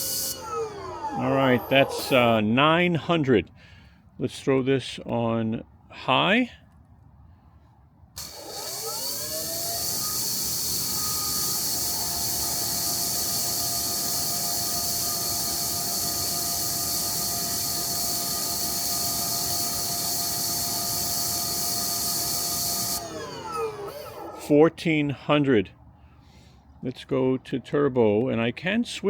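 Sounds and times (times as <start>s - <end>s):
pressure washer motor whine: 0.0s - 2.4s, 8.2s - 24.5s
water jet hissing: 0.0s - 2.4s, 8.2s - 24.3s.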